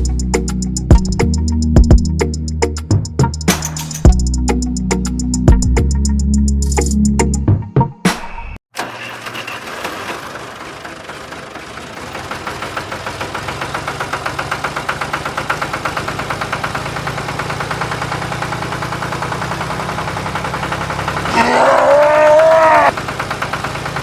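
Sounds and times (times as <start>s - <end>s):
small engine chugging: 8.8s - 24.0s.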